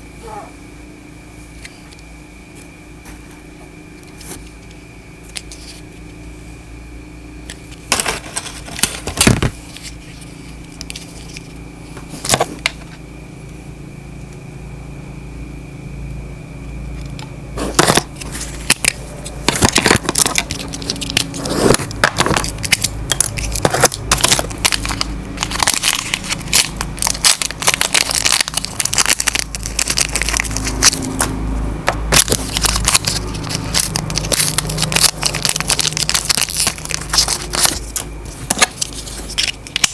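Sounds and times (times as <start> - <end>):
steady low hum: 0.0 - 39.9
handling crackling and clicks: 17.0 - 31.3, 31.9 - 39.9.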